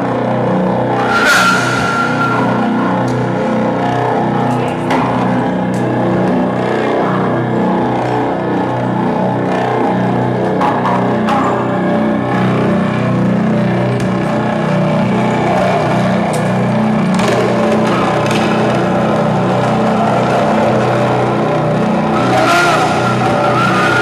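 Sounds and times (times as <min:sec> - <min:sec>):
sharp crash: 0:01.1 - 0:03.4.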